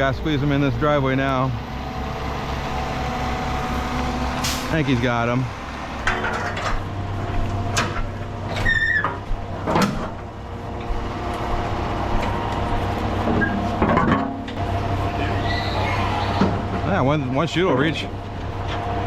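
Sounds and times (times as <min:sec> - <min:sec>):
diesel truck engine running: 0:00.0 - 0:19.0
clunks and knocks: 0:06.0 - 0:11.4, 0:13.2 - 0:14.6
brief squeal: 0:08.6 - 0:09.1, 0:15.2 - 0:16.4.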